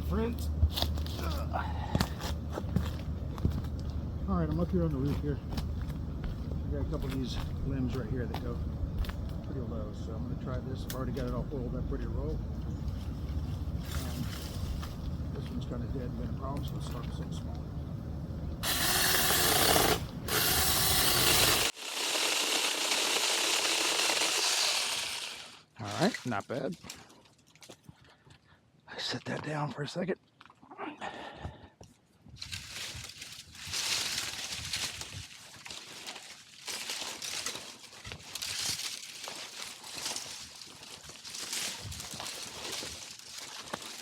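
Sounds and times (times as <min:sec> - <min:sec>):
leafy tree limbs rustling: 0:02.4 - 0:27.7, 0:32.4 - 0:44.0
electric chainsaw cutting branch: 0:18.6 - 0:25.7.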